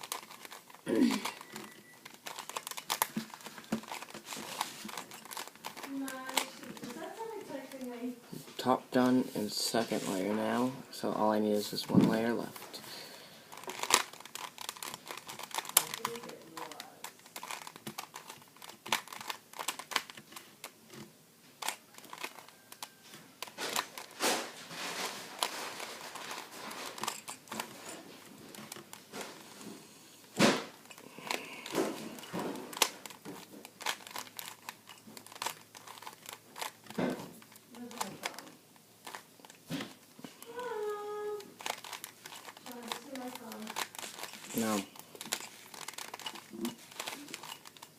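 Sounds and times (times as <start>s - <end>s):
puzzle cube layers clicking: 0.0s - 7.0s, 13.5s - 20.8s, 30.9s - 39.6s, 41.4s - 47.9s.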